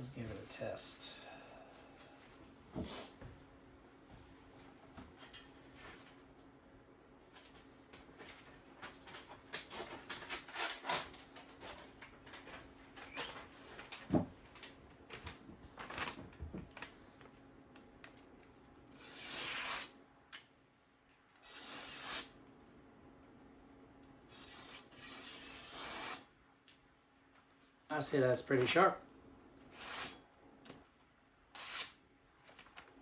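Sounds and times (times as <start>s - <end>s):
knife scraping slices: 19.0s - 20.0s, 29.7s - 30.2s, 31.6s - 32.0s.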